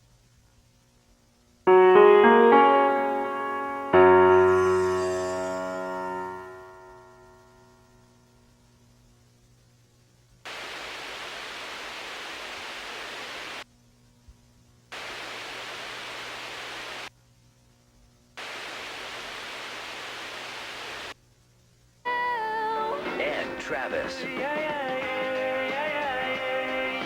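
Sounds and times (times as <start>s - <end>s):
static hiss: 0.0s - 7.6s, 8.3s - 13.7s, 14.9s - 17.2s, 17.9s - 27.0s
faint low hum: 0.0s - 24.0s.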